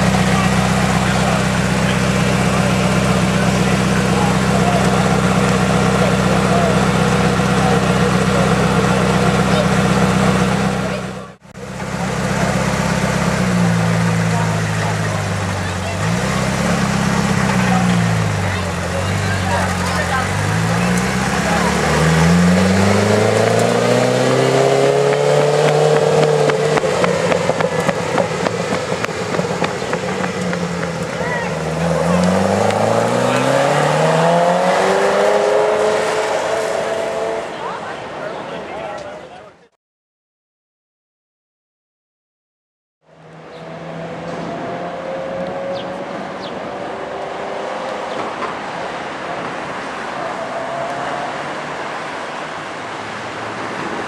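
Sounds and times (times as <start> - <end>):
sharp exhaust crackles: 0.0 - 36.4
car engine revving under load: 0.0 - 37.8, 43.1 - 54.0.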